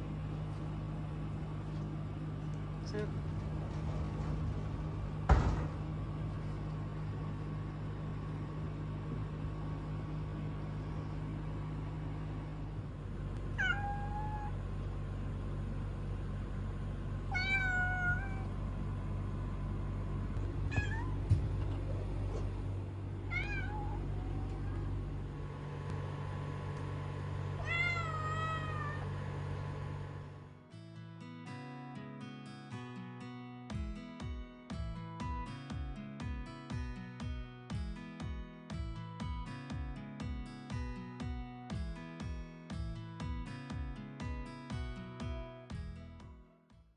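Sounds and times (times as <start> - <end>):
steady low hum: 0.0 - 30.6
kitten meowing: 13.6 - 14.5, 17.4 - 18.5, 20.7 - 21.2, 27.6 - 29.0.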